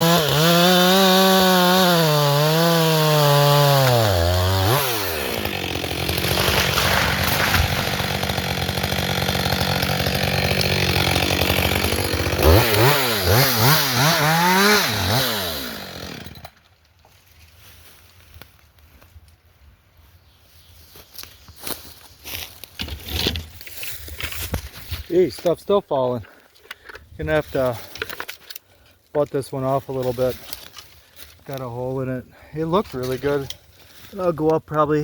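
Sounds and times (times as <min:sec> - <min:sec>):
chainsaw cutting wood: 0:00.0 - 0:16.7, 0:22.6 - 0:25.1.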